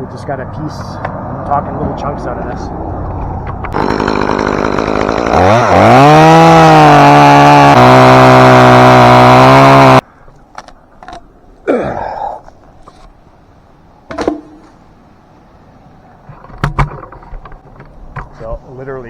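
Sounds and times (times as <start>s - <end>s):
chainsaw cutting wood: 3.7s - 10.0s
chainsaw revving: 3.7s - 10.0s.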